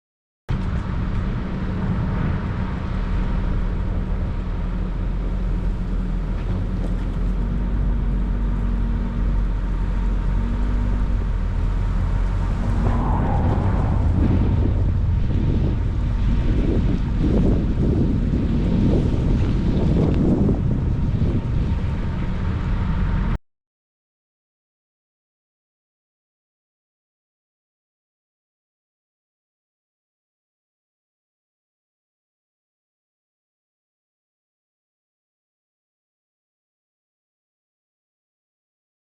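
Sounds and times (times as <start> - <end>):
vehicle engine running: 0.5 - 23.4
wind buffeting microphone: 0.5 - 23.4.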